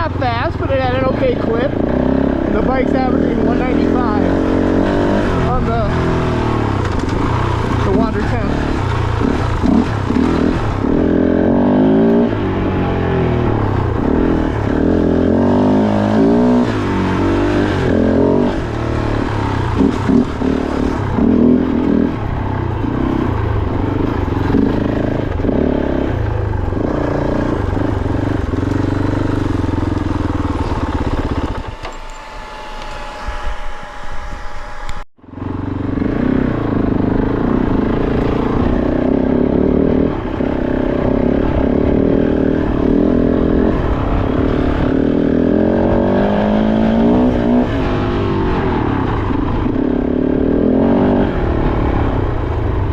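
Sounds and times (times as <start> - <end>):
motorcycle engine revving: 0.0 - 52.9.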